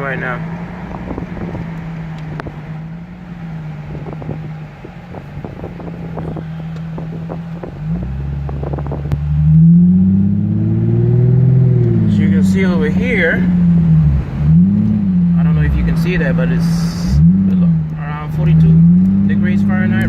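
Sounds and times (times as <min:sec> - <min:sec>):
car engine idling and revving: 0:00.0 - 0:20.0
wind on microphone: 0:00.7 - 0:03.0, 0:03.7 - 0:12.1.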